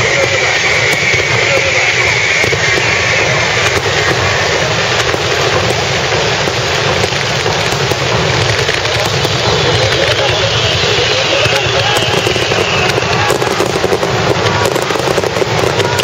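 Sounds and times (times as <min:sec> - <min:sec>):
fireworks bangs and crackles: 0:00.0 - 0:16.0.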